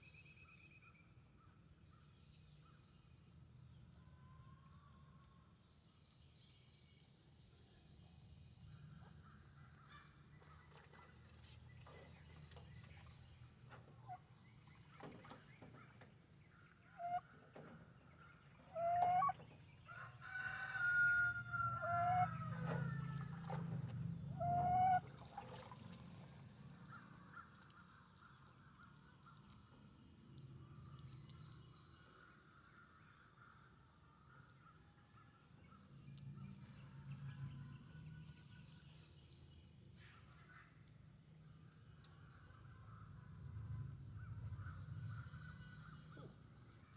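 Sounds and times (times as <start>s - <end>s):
chicken squawking: 18.8s - 19.4s, 24.4s - 25.0s.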